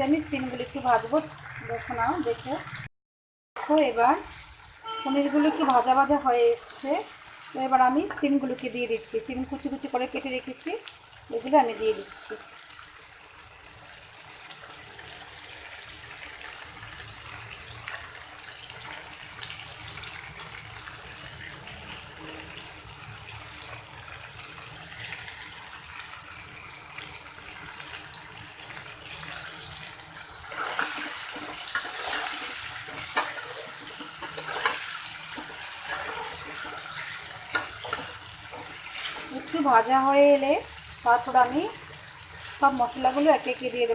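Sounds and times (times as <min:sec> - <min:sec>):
vegetables sizzling in hot oil: 0:00.0 - 0:02.9, 0:03.6 - 0:43.9
stirring knocks and scrapes: 0:30.4 - 0:39.6.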